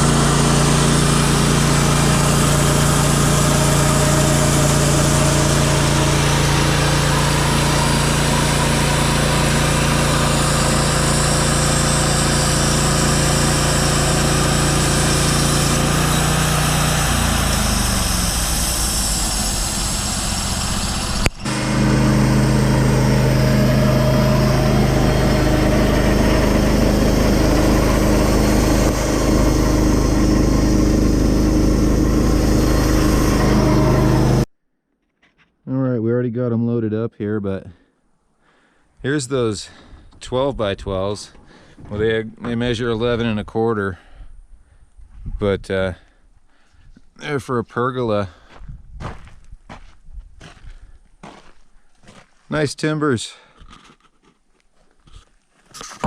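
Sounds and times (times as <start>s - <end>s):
sawmill gasoline engine running: 0.0s - 34.5s.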